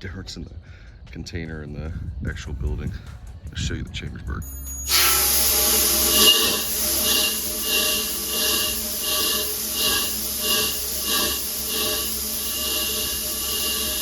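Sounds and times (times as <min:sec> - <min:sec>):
power hammer air hiss: 0:04.9 - 0:14.0
steady hum: 0:04.9 - 0:14.0.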